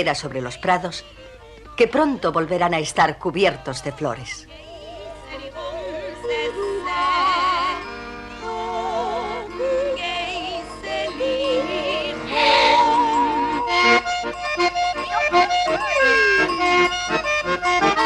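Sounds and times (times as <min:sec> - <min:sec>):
slow melody with vibrato: 0:04.6 - 0:18.0.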